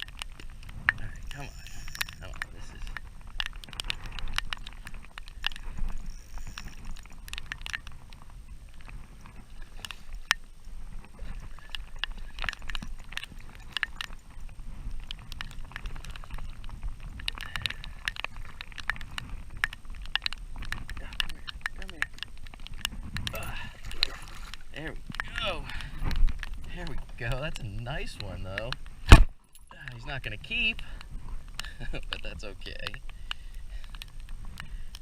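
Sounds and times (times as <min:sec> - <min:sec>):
fish splashing: 0:23.5 - 0:24.7.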